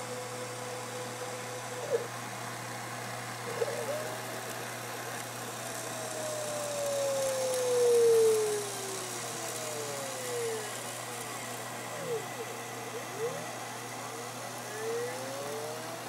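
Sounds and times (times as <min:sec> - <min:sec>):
machine hum: 0:00.0 - 0:16.0
motor whine sliding down in pitch: 0:03.4 - 0:16.0.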